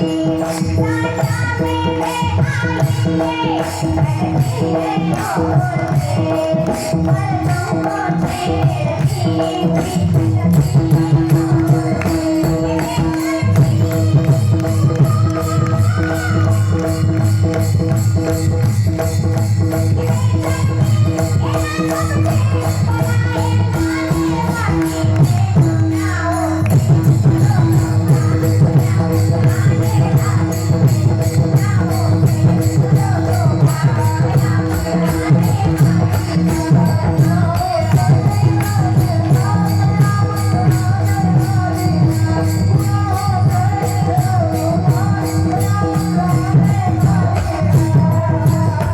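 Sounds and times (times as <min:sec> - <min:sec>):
fast hand drumming: 0:00.0 - 0:48.9
jingling percussion: 0:00.0 - 0:48.9.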